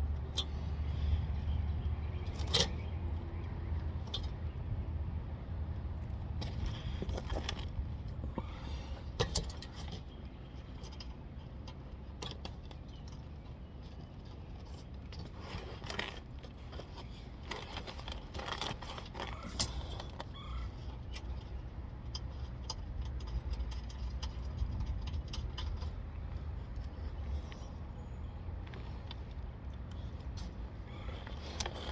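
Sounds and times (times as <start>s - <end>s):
steady low rumble: 0.0s - 15.3s.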